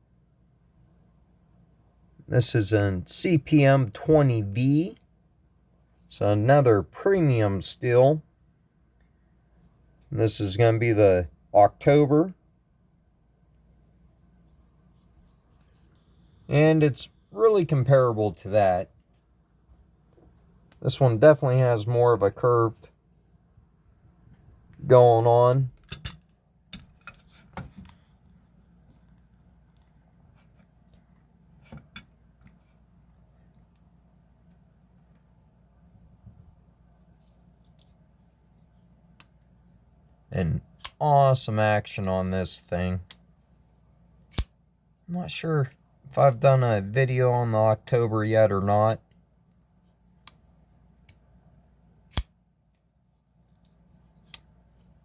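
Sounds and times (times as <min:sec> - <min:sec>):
folding knife clicks: 0:52.1 - 0:52.3.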